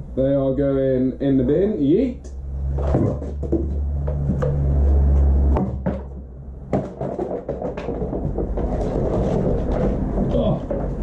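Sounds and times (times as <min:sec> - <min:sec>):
low steady rumble: 0:00.0 - 0:07.0.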